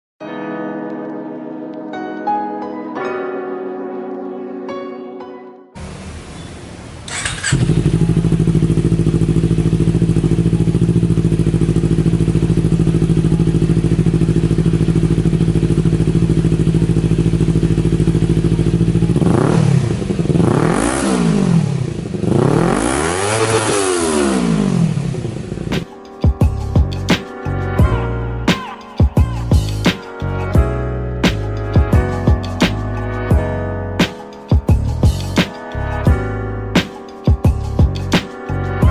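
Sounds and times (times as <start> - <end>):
motorcycle engine idling and revving: 5.8 - 27.6, 37.5 - 38.2.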